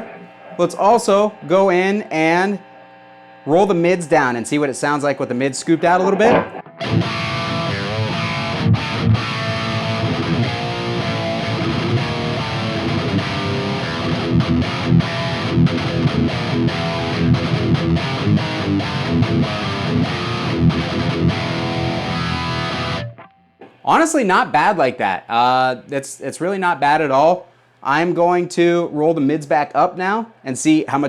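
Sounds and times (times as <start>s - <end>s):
distorted electric guitar riffing: 0.0s - 24.5s.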